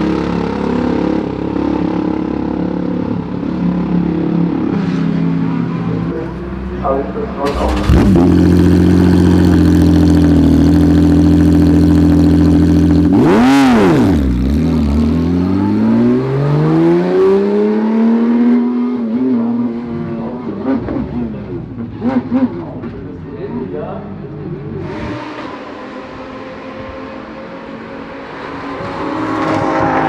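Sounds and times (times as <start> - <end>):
car accelerating: 7.4 - 22.5
race car engines revving: 7.4 - 23.3, 24.3 - 30.0.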